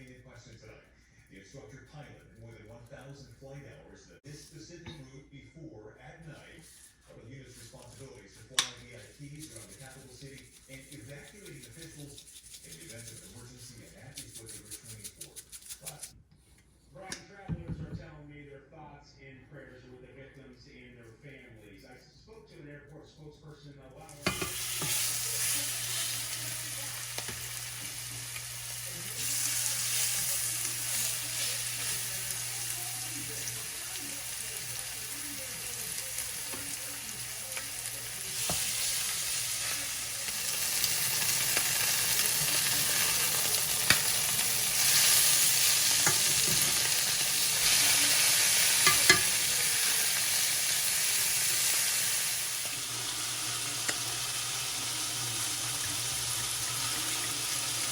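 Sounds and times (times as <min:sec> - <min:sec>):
food sizzling in a pan: 0:24.1 - 0:57.9
utensil clicking against pan: 0:48.7 - 0:49.4.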